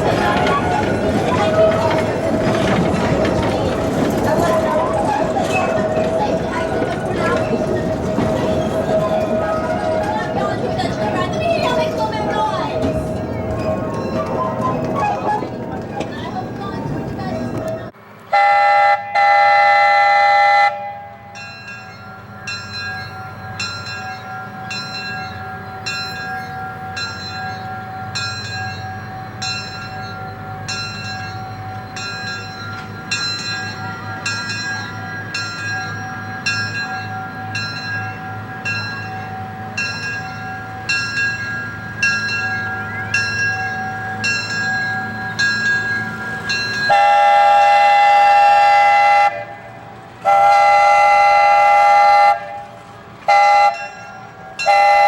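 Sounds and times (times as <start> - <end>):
locomotive bell ringing: 0.0 - 55.0
moving train rumble: 0.0 - 55.0
locomotive whistle blast: 18.3 - 21.4, 46.9 - 52.7, 53.3 - 55.0.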